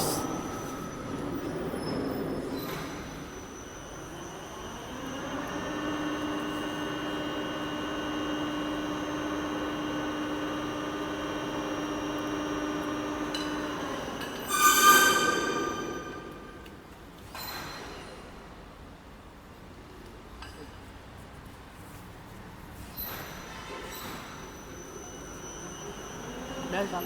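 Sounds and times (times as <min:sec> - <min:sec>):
high-pitched metallic squeal: 0:14.2 - 0:17.0
mechanical whine: 0:14.4 - 0:17.0.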